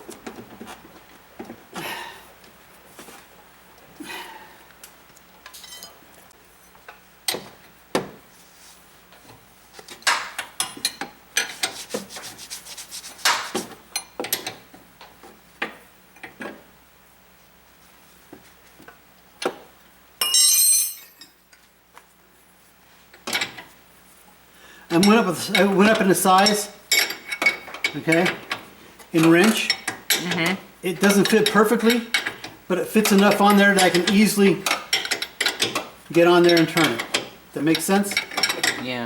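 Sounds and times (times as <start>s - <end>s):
hand tools clinking on metal: 20.2s - 21.3s, 24.9s - 28.6s, 29.2s - 30.3s, 30.9s - 38.8s.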